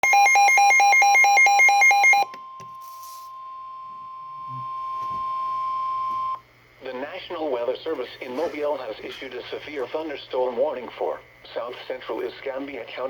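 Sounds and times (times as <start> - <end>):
steady warning alarm tone: 0.0 - 6.4.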